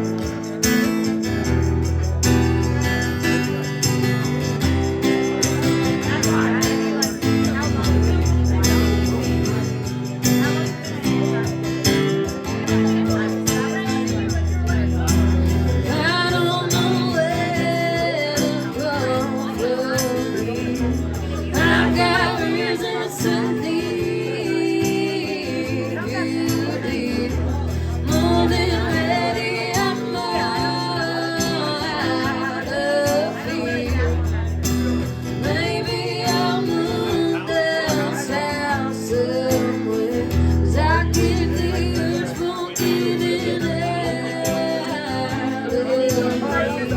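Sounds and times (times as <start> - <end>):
strummed acoustic guitar: 0.0 - 46.9
person singing lead vocal: 15.0 - 46.9.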